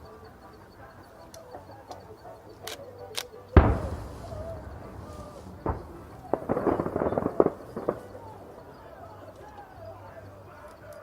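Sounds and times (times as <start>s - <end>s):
firework shell burst booming: 3.6s - 8.8s
firework bang: 3.6s - 8.9s
firework cracks: 3.6s - 9.8s.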